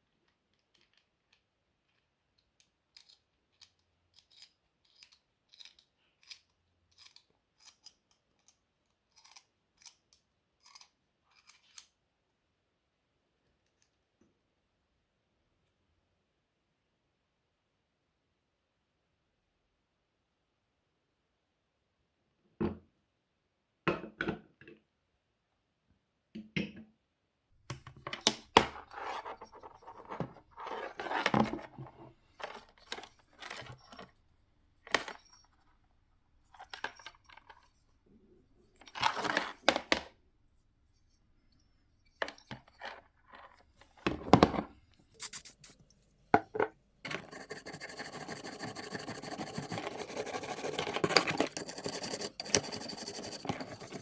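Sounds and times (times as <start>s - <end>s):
tool parts scraping and clinking: 45.0s - 54.0s.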